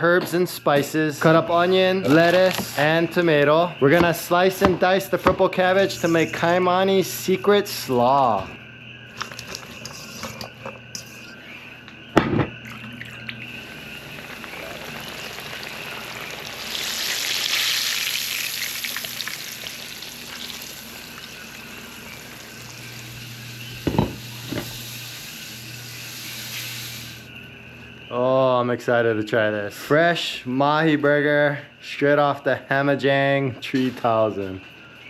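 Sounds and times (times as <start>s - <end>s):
fish sizzling in a pan: 13.4s - 27.4s.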